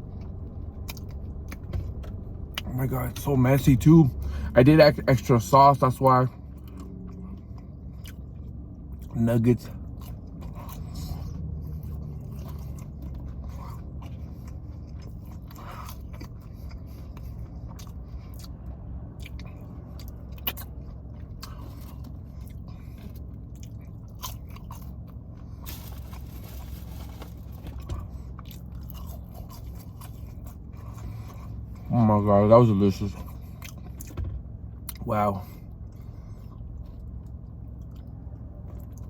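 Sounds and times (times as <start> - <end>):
person chewing food: 0.0 - 2.7, 6.4 - 9.2, 9.8 - 31.9, 33.2 - 34.2, 35.6 - 39.0
small crunches: 23.6 - 30.1.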